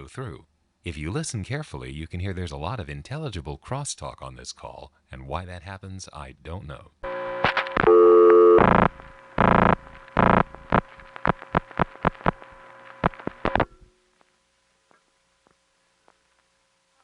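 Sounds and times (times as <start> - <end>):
telephone line tone chord: 7.0 - 12.3.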